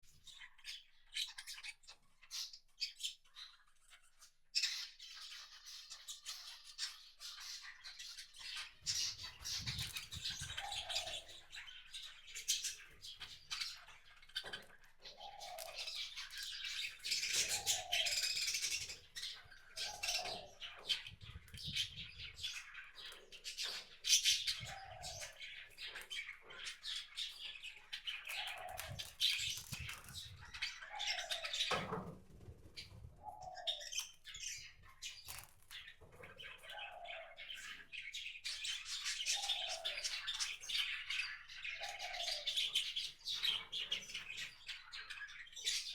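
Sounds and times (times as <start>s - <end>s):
small birds chirping: 0.0s - 45.9s.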